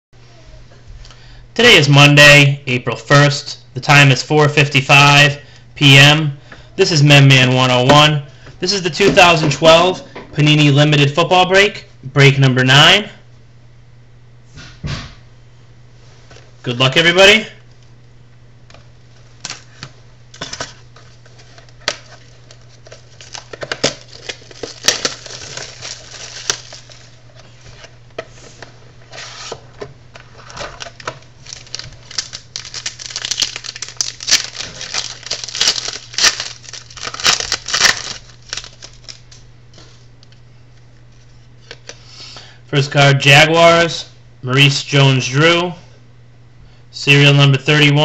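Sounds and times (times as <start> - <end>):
low electrical hum: 0.2 - 48.0
plastic wrap tearing and crinkling: 19.4 - 27.9, 30.2 - 39.5.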